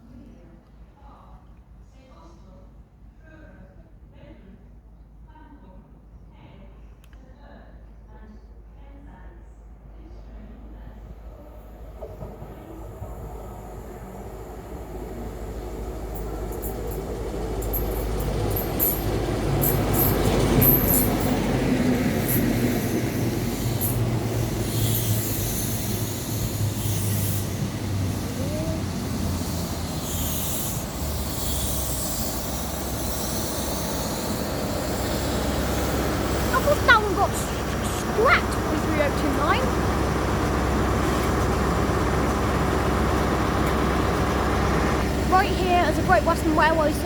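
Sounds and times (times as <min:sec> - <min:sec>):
train running on track: 0:09.6 - 0:47.0
train wheel squeals and clicks: 0:11.5 - 0:39.7.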